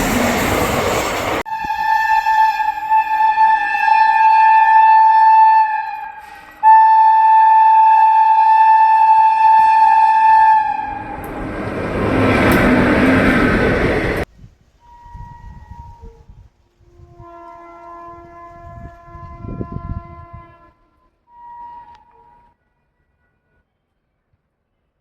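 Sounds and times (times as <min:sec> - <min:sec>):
train running past: 0:00.0 - 0:14.3
locomotive horn blasts: 0:01.5 - 0:13.8, 0:14.8 - 0:23.7.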